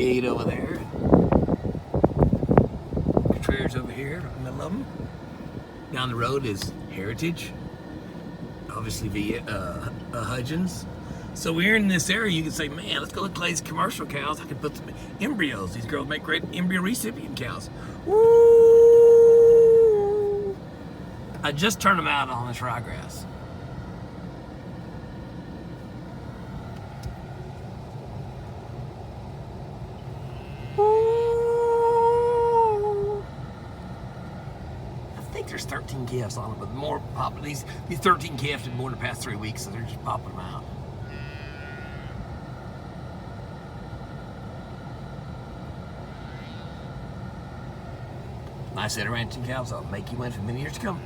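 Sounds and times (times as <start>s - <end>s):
car engine rumbling: 0.0s - 41.0s, 42.1s - 51.0s
road noise: 0.0s - 51.0s
cow mooing: 30.2s - 31.3s, 41.0s - 42.3s, 46.1s - 47.0s.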